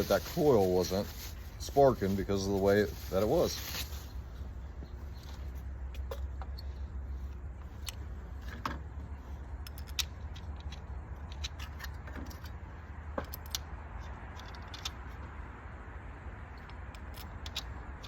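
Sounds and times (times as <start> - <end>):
steady low hum: 0.0 - 18.0
hand tools clicking and clinking: 9.6 - 15.3, 16.5 - 18.0.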